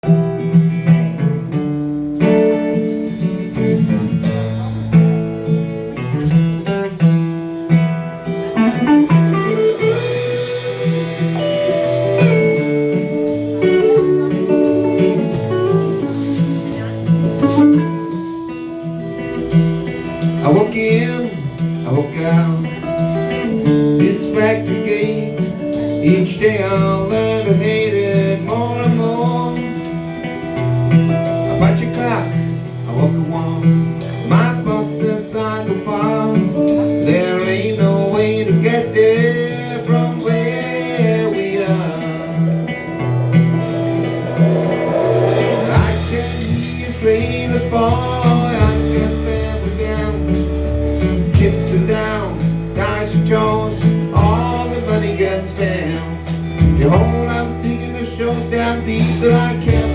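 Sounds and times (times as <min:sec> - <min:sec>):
blues band instrumental: 0:00.0 - 0:59.9
repeating bass line: 0:42.5 - 0:47.3.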